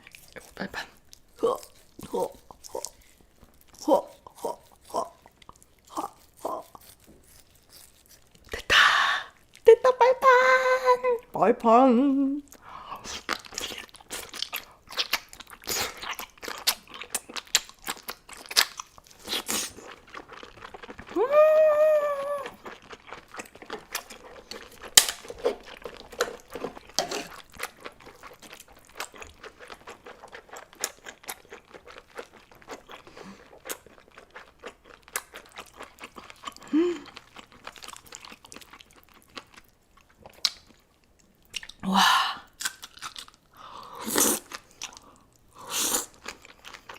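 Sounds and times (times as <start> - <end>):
wet chewing: 0.0 - 8.7, 12.5 - 41.8, 42.5 - 46.9
person humming mmm: 21.1 - 22.6, 36.6 - 37.2.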